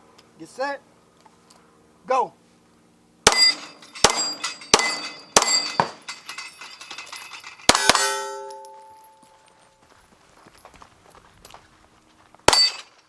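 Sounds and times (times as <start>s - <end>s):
pistol shots: 3.2s - 6.0s
steel plate ringing: 3.3s - 9.4s
bullets clanging on steel targets: 3.3s - 9.6s, 12.5s - 13.0s.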